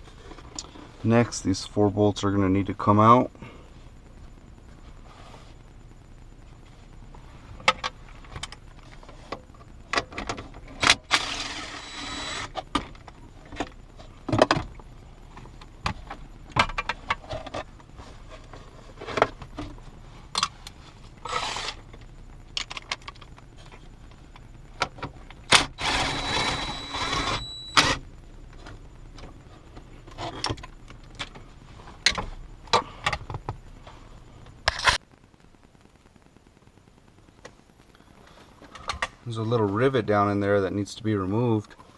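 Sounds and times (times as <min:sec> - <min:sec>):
tool scraping: 0:21.2 - 0:21.8.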